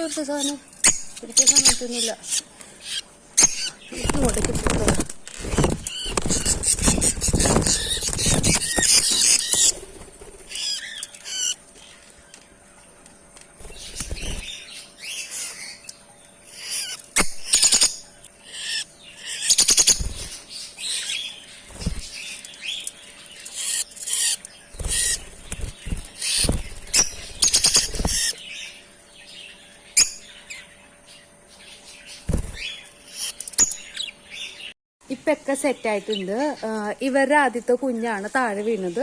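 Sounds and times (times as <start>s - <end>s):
lovebirds chirping: 0.0s - 39.0s
wings flapping: 3.5s - 11.1s, 13.5s - 14.6s, 19.6s - 20.4s, 21.7s - 22.2s, 24.7s - 28.4s, 32.2s - 32.8s.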